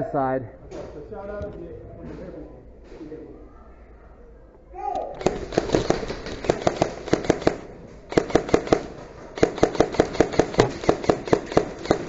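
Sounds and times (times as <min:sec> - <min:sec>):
airsoft guns firing: 0:05.1 - 0:12.0.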